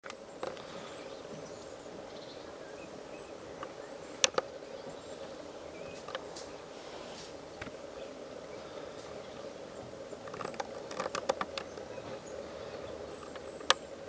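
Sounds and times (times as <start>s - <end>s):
birds chirping faintly: 0.0s - 14.0s
steady low hum: 0.0s - 14.0s
sharp clicks: 3.6s - 4.5s.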